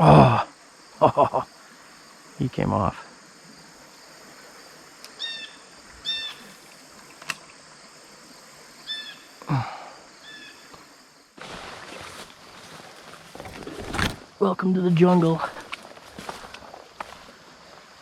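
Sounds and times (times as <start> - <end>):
outdoor background noise: 0.0 - 18.0
faint sharp clicks: 5.0 - 5.2, 6.7 - 7.6.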